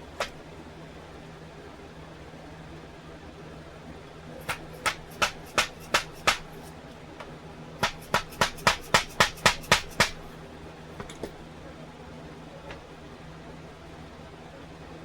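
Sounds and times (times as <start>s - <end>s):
small hammer tapping metal: 0.1s - 0.4s, 4.4s - 6.7s, 7.8s - 10.2s.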